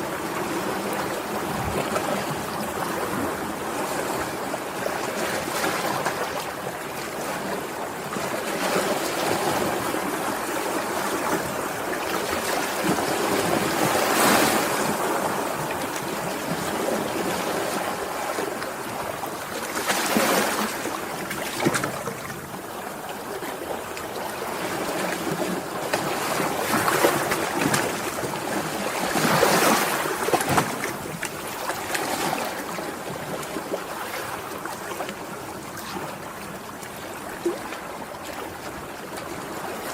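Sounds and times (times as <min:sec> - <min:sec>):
sea waves washing ashore: 0:00.0 - 0:39.9.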